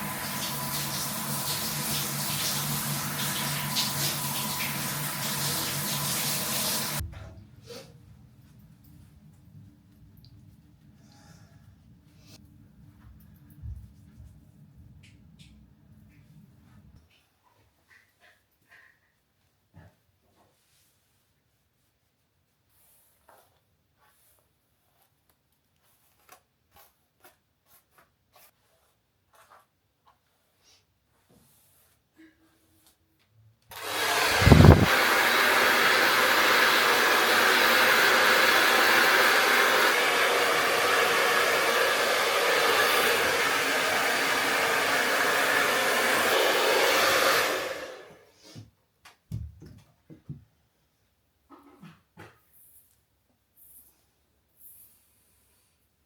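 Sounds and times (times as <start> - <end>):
water running from tap: 0.0 - 7.0.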